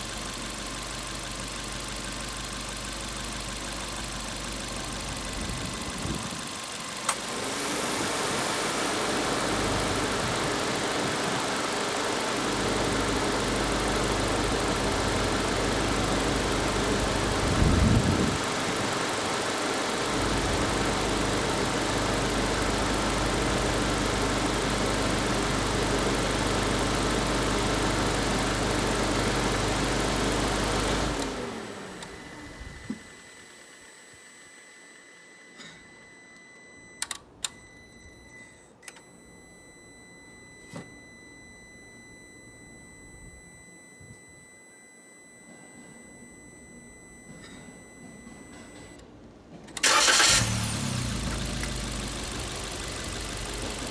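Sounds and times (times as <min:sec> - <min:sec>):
car engine idling: 0:00.0 - 0:31.9, 0:49.8 - 0:53.9
click: 0:36.4 - 0:37.6, 0:38.8 - 0:39.1.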